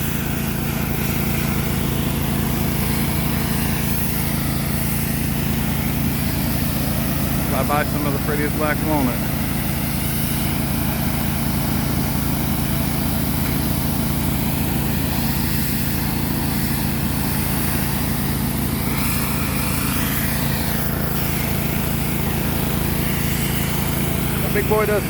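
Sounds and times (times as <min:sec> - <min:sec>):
gasoline engine running steadily: 0:00.0 - 0:25.0.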